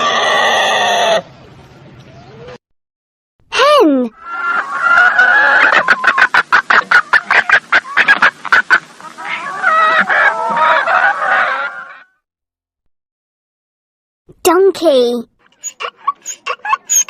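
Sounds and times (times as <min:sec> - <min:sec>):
hen clucking: 0:00.0 - 0:01.3, 0:04.2 - 0:12.1, 0:15.6 - 0:17.0.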